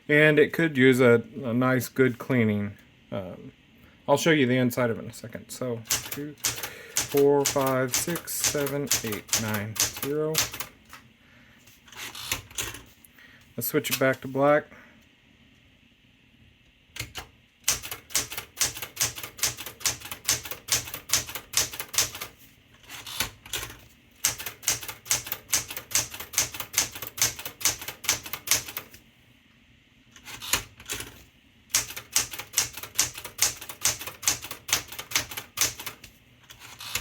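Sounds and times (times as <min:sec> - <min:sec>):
manual typewriter typing: 0:05.9 - 0:10.8, 0:12.0 - 0:12.9, 0:17.0 - 0:29.0, 0:30.2 - 0:37.0.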